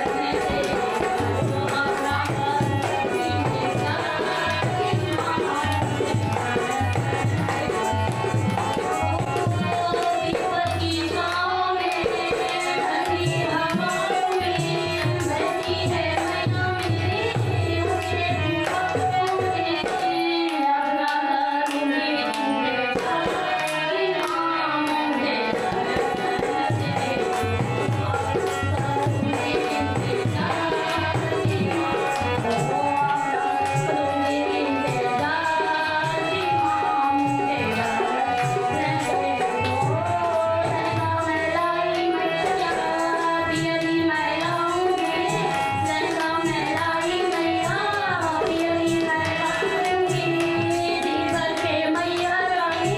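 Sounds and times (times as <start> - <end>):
hand drums rhythm: 0.0 - 20.6, 22.9 - 52.9
devotional music: 0.0 - 52.9.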